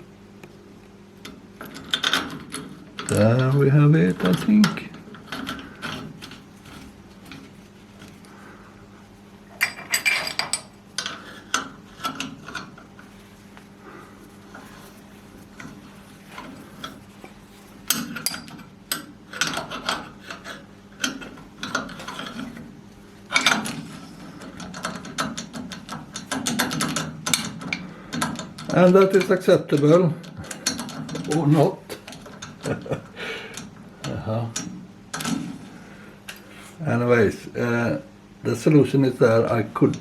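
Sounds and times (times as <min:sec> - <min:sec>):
metal parts clicking and rattling: 0:09.6 - 0:12.8, 0:17.8 - 0:22.6, 0:23.3 - 0:32.9.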